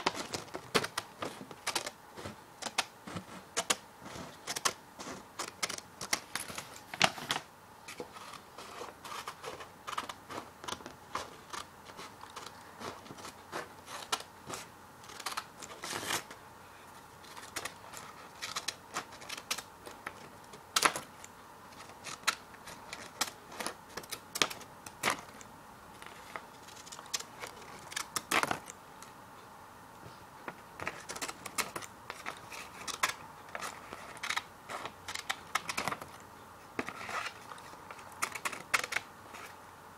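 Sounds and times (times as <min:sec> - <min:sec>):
scissors cutting paper: 0:36.8 - 0:39.5.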